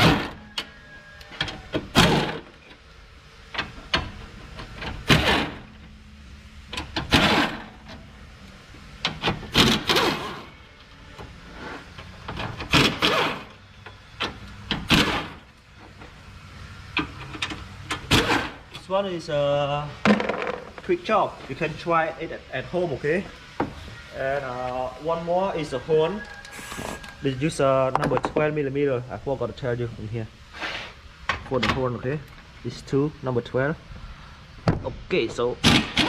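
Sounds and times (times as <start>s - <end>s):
power tool bursts: 5.0s - 5.8s, 7.0s - 7.8s, 9.2s - 10.5s, 12.7s - 13.6s, 14.7s - 15.4s.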